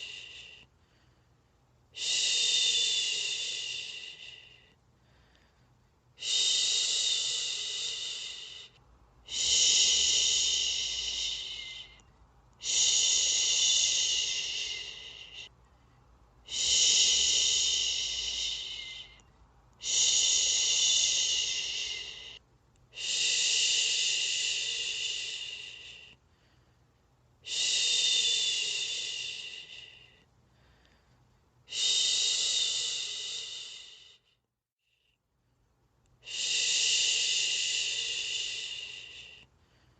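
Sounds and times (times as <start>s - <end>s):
person shushing: 6.2s - 12.0s, 12.6s - 15.5s, 16.5s - 19.2s, 19.8s - 22.4s.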